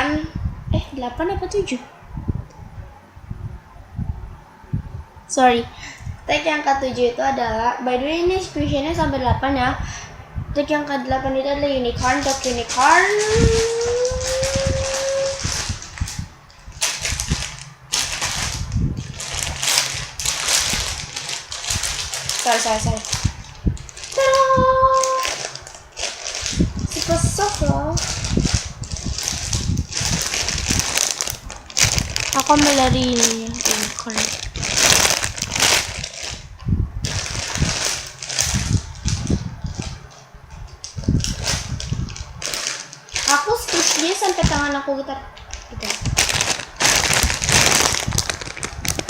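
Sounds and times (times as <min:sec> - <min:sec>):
plastic crinkling and rustling: 0:11.9 - 0:49.0.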